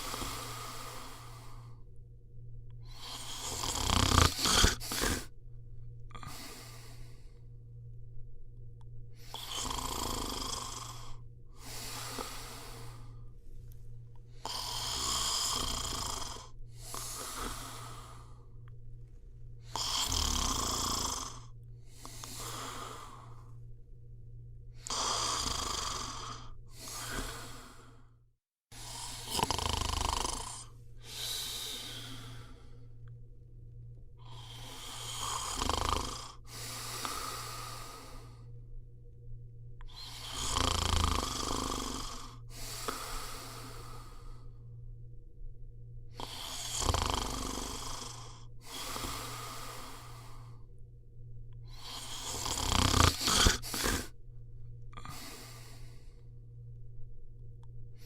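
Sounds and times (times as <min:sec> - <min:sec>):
person snoring: 0:00.0 - 0:01.9, 0:02.8 - 0:05.4, 0:06.1 - 0:07.5, 0:09.2 - 0:13.3, 0:14.3 - 0:18.7, 0:19.6 - 0:23.6, 0:24.7 - 0:28.1, 0:28.7 - 0:33.1, 0:34.2 - 0:38.6, 0:39.8 - 0:44.7, 0:46.1 - 0:50.7, 0:51.6 - 0:54.2, 0:54.9 - 0:56.4
steady low hum: 0:00.0 - 0:58.0.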